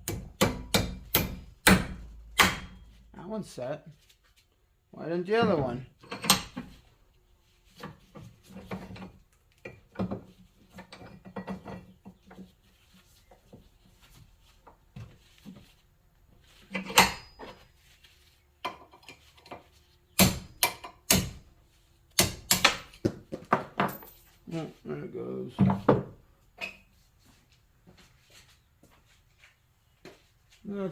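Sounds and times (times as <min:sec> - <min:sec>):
hand tools clinking on metal: 0:16.7 - 0:17.7.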